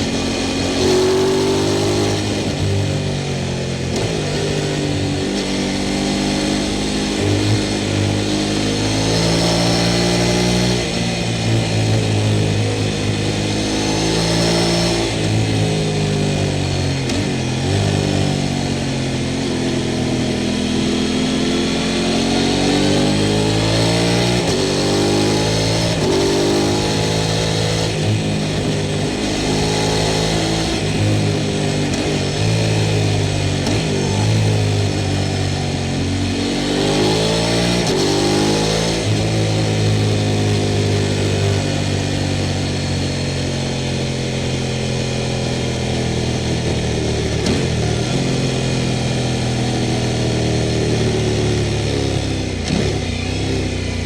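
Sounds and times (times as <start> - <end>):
motorcycle engine revving: 0.0 - 54.0.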